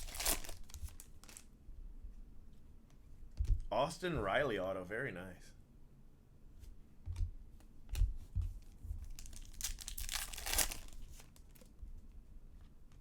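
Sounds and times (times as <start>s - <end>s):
packaging crinkling: 0.0s - 1.5s, 9.0s - 11.7s
soft taps and clicks of cards: 6.6s - 8.8s.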